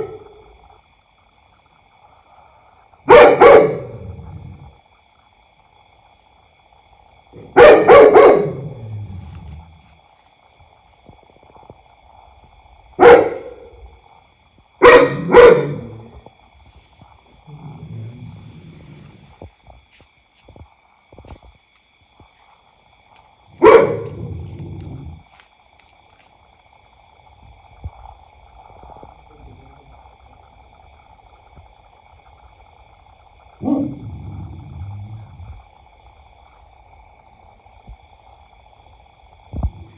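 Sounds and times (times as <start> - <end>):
dog barking loudly: 3.1 - 4.1, 7.4 - 9.0, 13.0 - 13.7, 14.8 - 16.1, 23.6 - 24.7, 33.6 - 34.0.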